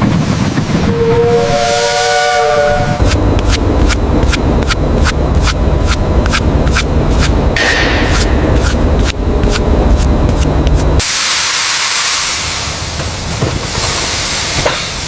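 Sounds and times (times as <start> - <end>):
steam locomotive whistle: 0.9 - 3.0
locomotive running with beat: 2.1 - 11.0.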